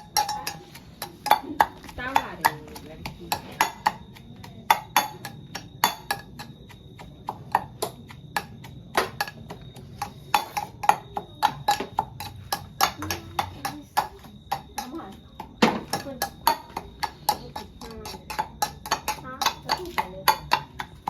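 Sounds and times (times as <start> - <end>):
wooden knocks on a board: 11.4 - 21.0.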